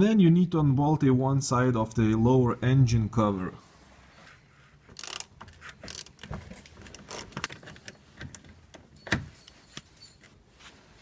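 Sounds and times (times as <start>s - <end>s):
hand tools clinking on metal: 8.9s - 10.4s.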